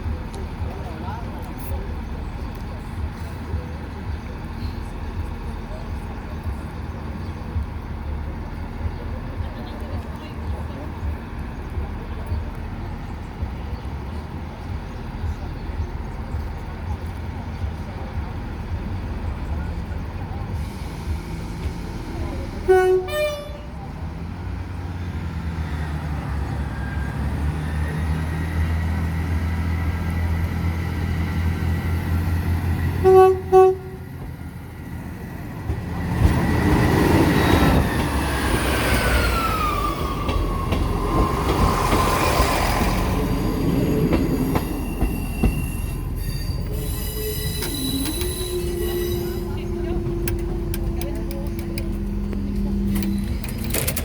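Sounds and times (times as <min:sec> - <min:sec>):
diesel train engine running: 0:00.0 - 0:54.0
train wheels rumbling on rails: 0:00.0 - 0:54.0
two-note train horn blast: 0:22.6 - 0:23.8, 0:33.0 - 0:34.1.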